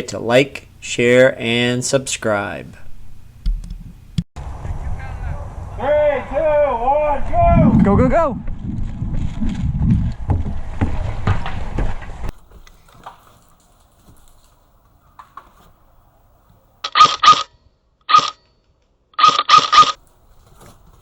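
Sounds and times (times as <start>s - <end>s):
wind noise on microphone: 3.4s - 12.4s.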